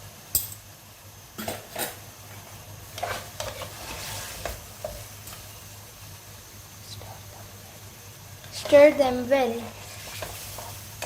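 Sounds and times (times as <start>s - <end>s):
food sizzling in oil: 0.0s - 11.0s
spoon scraping pan: 2.9s - 5.4s, 9.6s - 11.0s.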